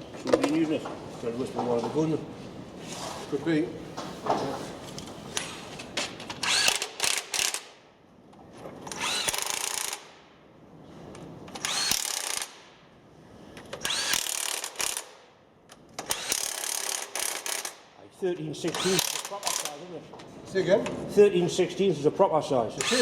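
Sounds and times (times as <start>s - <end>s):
power tool bursts: 6.4s - 7.7s, 11.6s - 12.6s, 13.8s - 15.1s, 16.0s - 17.8s, 18.7s - 19.8s, 22.8s - 23.0s.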